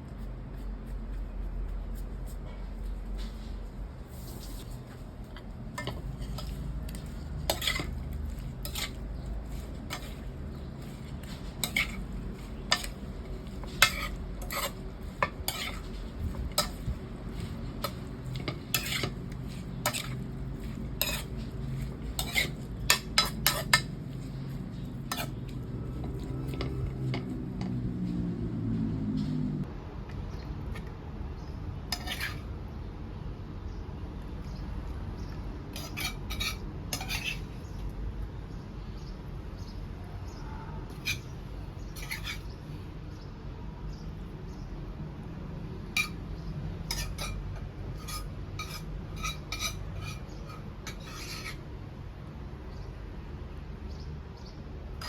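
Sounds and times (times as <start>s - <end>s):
utensil scraping a dish: 5.8s - 27.3s, 31.9s - 32.5s, 35.8s - 37.5s, 41.9s - 42.5s, 46.0s - 46.2s, 46.8s - 51.6s.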